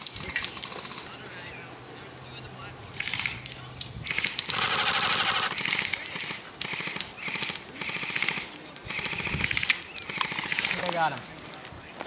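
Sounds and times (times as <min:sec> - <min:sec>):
airsoft guns firing full-auto: 0:04.1 - 0:11.1.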